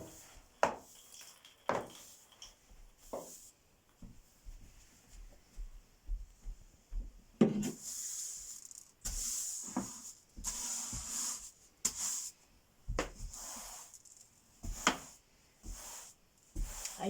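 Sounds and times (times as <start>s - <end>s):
broom sweeping floor: 0.0s - 17.0s
broom knocking: 6.9s - 12.3s, 12.9s - 17.0s.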